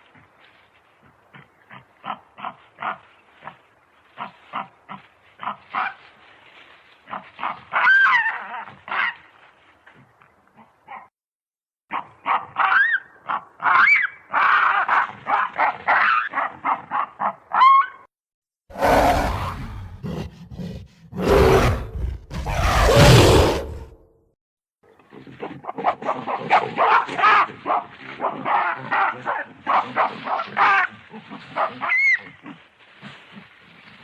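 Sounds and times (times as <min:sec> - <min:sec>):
baboon shrieks: 0:07.4 - 0:09.2, 0:12.3 - 0:14.7, 0:31.8 - 0:32.4
baboon barking grunts: 0:25.1 - 0:32.6.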